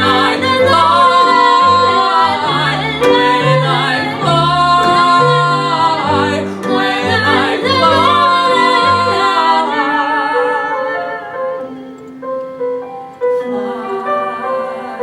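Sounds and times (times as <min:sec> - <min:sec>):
two singers with vibrato: 0:00.0 - 0:12.1, 0:13.2 - 0:15.0
instrumental accompaniment: 0:00.0 - 0:15.0.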